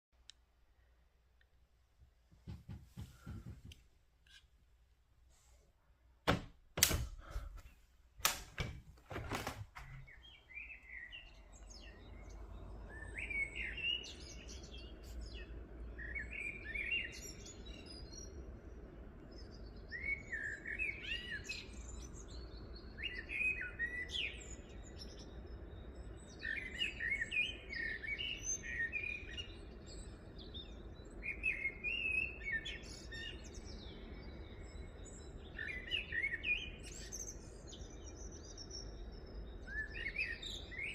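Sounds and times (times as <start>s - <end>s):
songbird chirping: 0.2s - 40.9s
sharp knocks: 2.4s - 3.8s, 6.2s - 7.3s.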